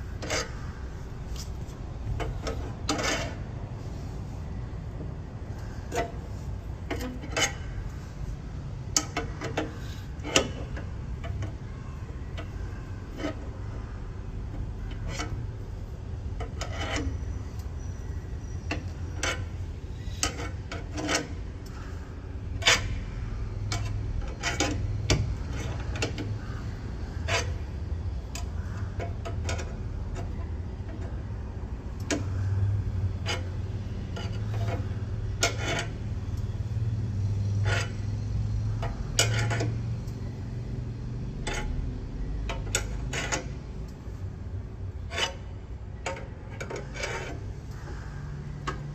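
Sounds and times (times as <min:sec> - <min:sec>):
metal tools clicking and scraping: 0:00.0 - 0:00.7, 0:01.3 - 0:03.4, 0:06.9 - 0:07.7, 0:16.3 - 0:21.8, 0:23.6 - 0:26.6, 0:27.2 - 0:27.6, 0:31.9 - 0:44.1, 0:44.9 - 0:47.8.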